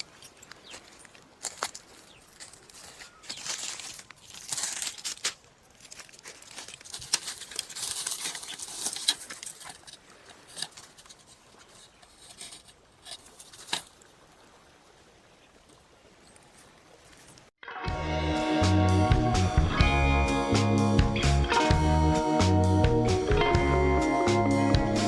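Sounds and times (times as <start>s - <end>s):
small hard parts handled: 6.4s - 13.9s.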